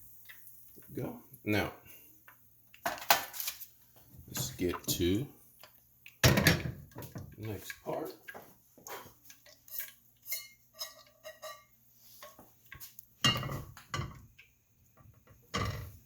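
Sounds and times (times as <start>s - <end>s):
pots and pans clattering: 6.2s - 7.8s, 13.2s - 14.4s, 15.0s - 16.0s.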